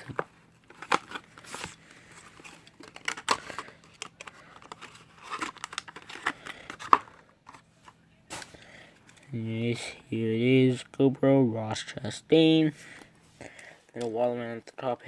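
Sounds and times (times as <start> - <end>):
packaging rustling and tearing: 0.0 - 7.6.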